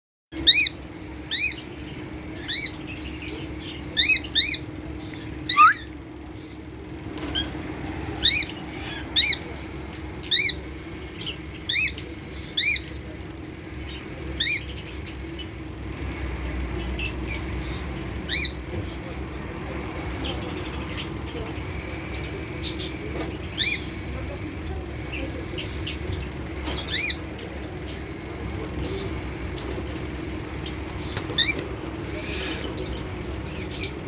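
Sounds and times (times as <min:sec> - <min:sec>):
cockatiel chirping: 0:00.4 - 0:01.8, 0:02.4 - 0:04.7, 0:05.4 - 0:05.9, 0:10.2 - 0:10.6
steady low hum: 0:00.4 - 0:34.0.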